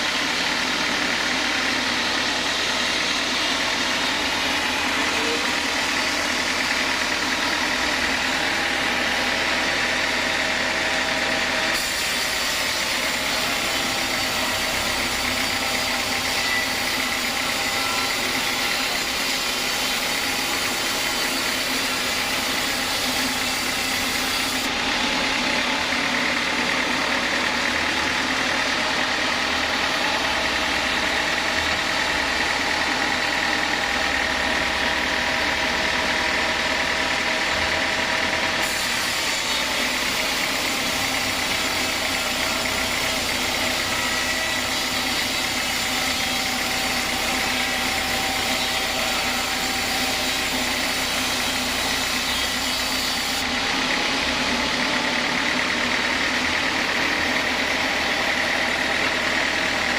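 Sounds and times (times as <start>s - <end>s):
sawmill machinery drone: 0.0s - 59.9s.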